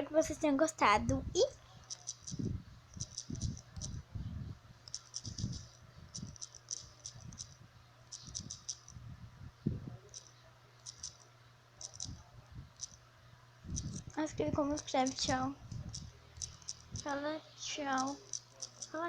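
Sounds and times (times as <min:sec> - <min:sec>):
touchscreen typing clicks: 0:01.8 - 0:04.0, 0:04.8 - 0:09.0, 0:10.1 - 0:12.2, 0:12.8 - 0:13.0, 0:13.7 - 0:17.2, 0:17.8 - 0:19.0
phone being handled: 0:04.8 - 0:09.0, 0:11.8 - 0:12.2.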